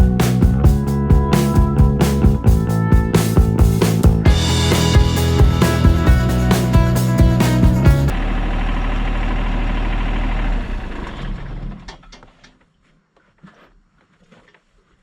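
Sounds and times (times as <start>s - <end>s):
engine running: 0.0s - 11.9s.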